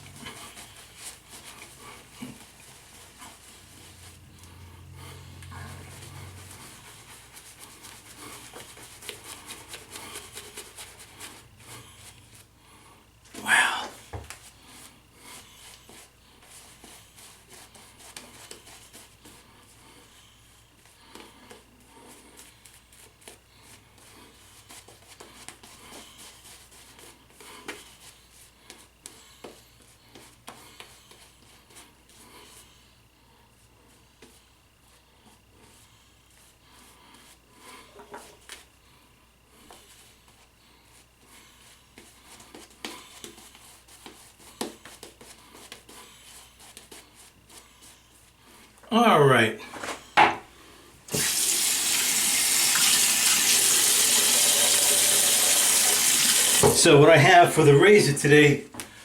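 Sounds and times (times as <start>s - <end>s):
shaving brush scrubbing stubble: 5.6s - 11.9s
shaving brush scrubbing lather: 5.7s - 11.5s, 51.1s - 58.5s.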